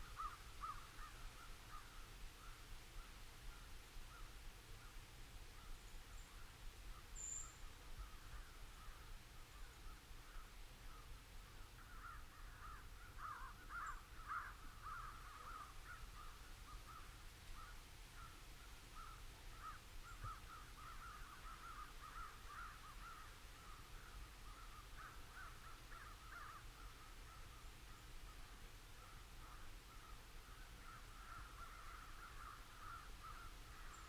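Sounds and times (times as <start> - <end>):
crows cawing: 0.2 - 1.9, 11.8 - 18.4, 19.0 - 27.4, 30.8 - 34.0.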